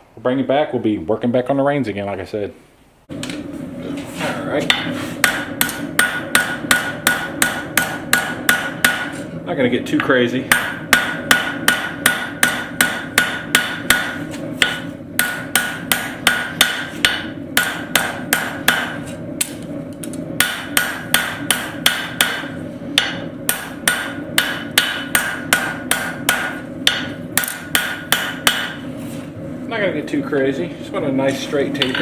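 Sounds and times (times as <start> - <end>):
steady low hum: 0.0 - 32.0
hammer striking steel on anvil: 4.6 - 9.2, 10.0 - 28.9.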